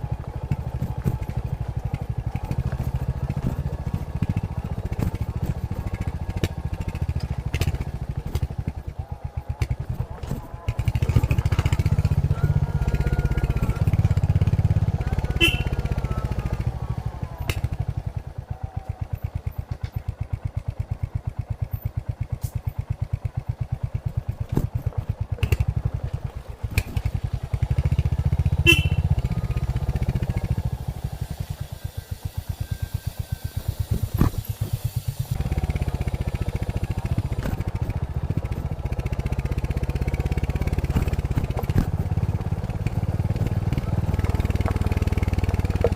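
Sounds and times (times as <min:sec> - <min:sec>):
motorcycle engine riding: 0:00.0 - 0:45.9.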